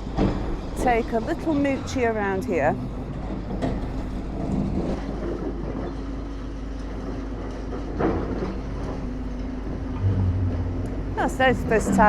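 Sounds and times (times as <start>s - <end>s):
demolition machinery engine rumble: 0.0s - 12.0s
level hum: 9.9s - 12.0s
brief loud noise: 10.0s - 11.1s.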